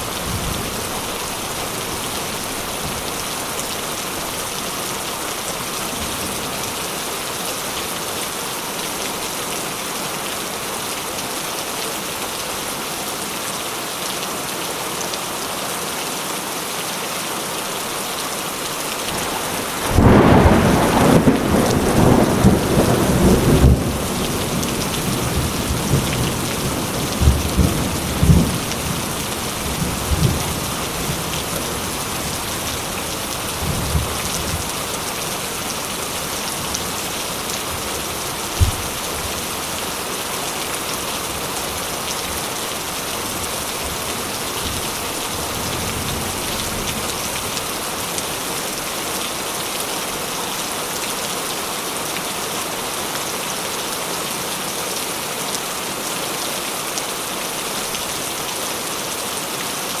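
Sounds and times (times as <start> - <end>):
steady rain falling: 0.0 - 60.0
low thunder rumbles: 19.2 - 34.8.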